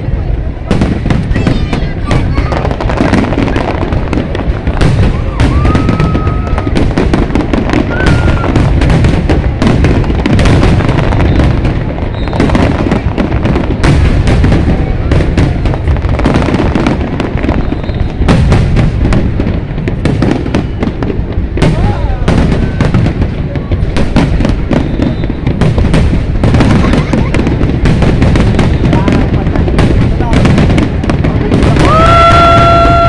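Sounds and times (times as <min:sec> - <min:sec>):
fireworks booming and crackling: 0:00.0 - 0:33.0.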